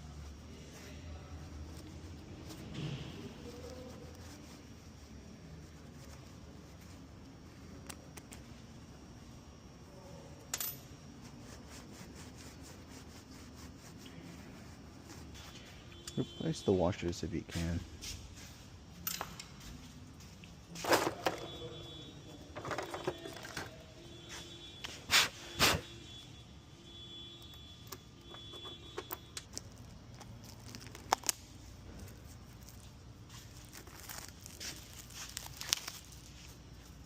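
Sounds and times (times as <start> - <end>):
tools and parts clicking: 19.0 - 19.6.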